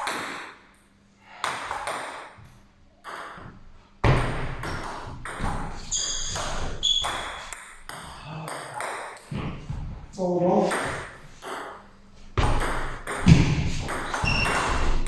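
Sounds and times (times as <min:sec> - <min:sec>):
high squeaks: 0:05.9 - 0:07.4, 0:14.1 - 0:14.8.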